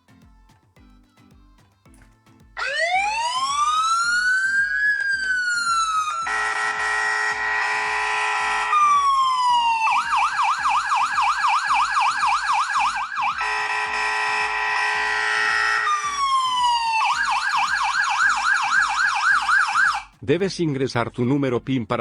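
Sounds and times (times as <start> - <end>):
low pulsing beat: 0.0 - 20.7
electronic police-style siren: 2.6 - 20.1.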